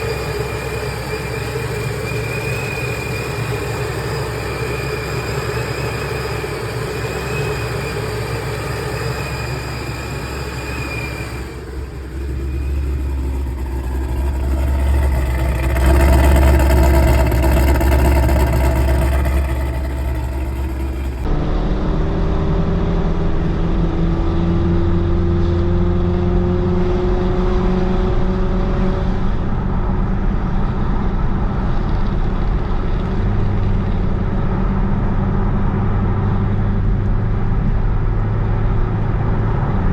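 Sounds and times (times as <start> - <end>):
car engine running: 0.0 - 21.4
car accelerating drone: 0.0 - 39.9.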